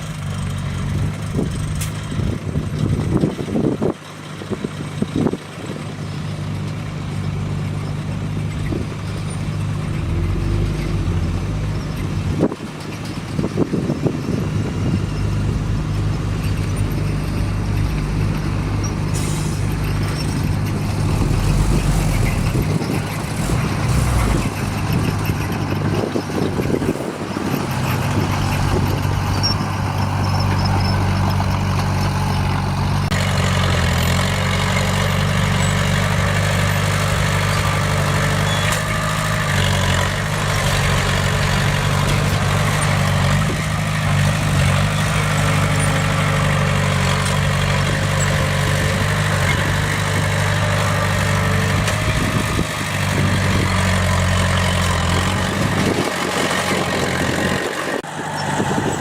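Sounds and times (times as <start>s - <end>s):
heavy diesel engine running: 0.0s - 59.0s
clattering hiss: 19.0s - 24.9s.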